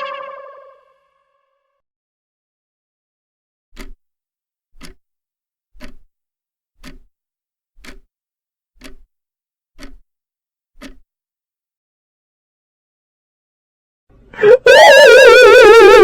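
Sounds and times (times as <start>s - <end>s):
clock ticking: 3.8s - 4.0s, 4.7s - 5.0s, 5.8s - 6.1s, 6.8s - 7.1s, 7.8s - 8.1s, 8.8s - 9.1s, 9.8s - 10.1s, 10.8s - 11.1s.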